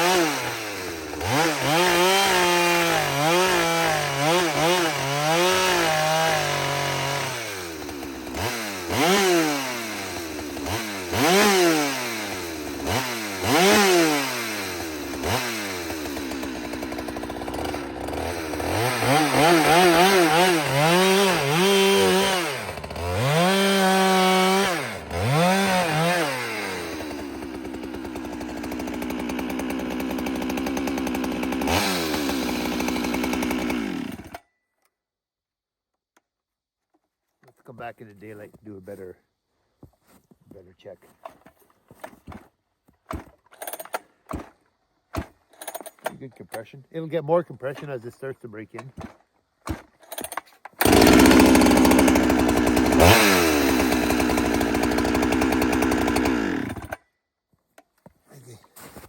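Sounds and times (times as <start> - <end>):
chainsaw revving: 0.0 - 34.4, 50.8 - 57.0.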